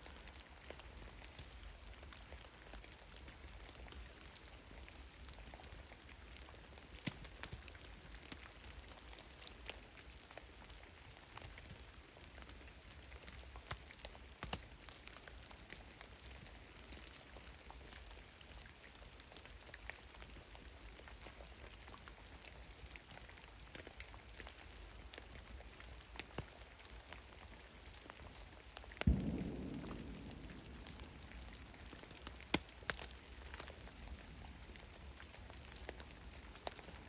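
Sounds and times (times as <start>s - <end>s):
meltwater dripping: 0.0s - 37.0s
faint hiss: 21.0s - 37.0s.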